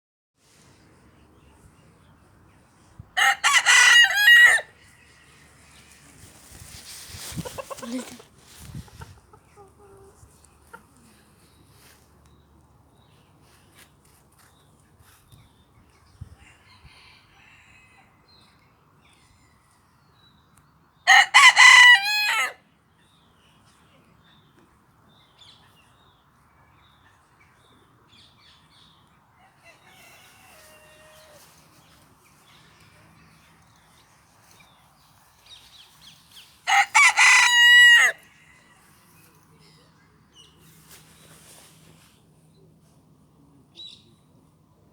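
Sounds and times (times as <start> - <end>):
rooster crowing: 3.2 - 4.8, 21.1 - 22.6, 29.4 - 31.6, 36.6 - 38.9.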